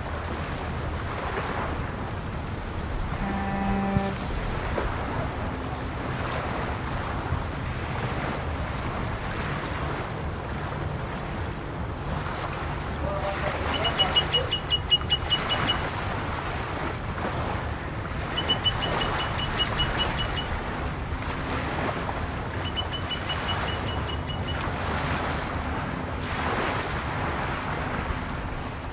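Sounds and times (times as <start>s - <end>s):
steady rumbling wash: 0.0s - 28.9s
rapid high pips: 13.7s - 15.9s, 18.4s - 20.6s, 22.6s - 24.6s.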